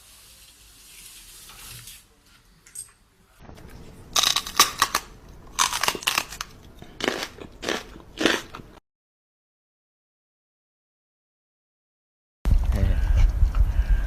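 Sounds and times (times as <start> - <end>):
crisp crunching: 4.2 - 8.6.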